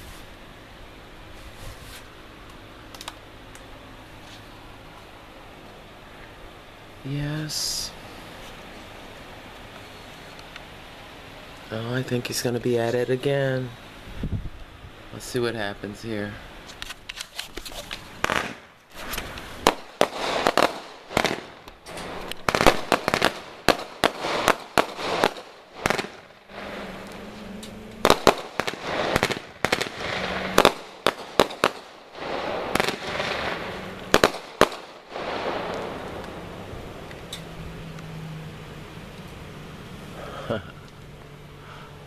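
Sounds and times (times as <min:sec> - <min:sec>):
fireworks crackling: 0:00.0 - 0:41.6
fireworks bangs and pops: 0:16.6 - 0:37.4.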